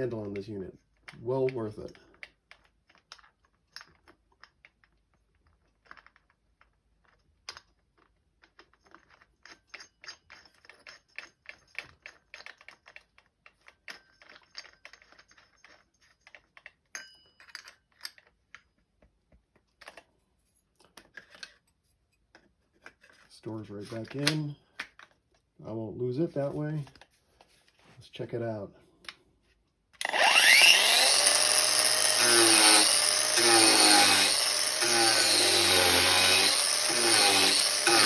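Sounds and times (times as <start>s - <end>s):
metal parts clicking and tapping: 0.0s - 20.1s
short metallic ring: 17.0s - 17.6s.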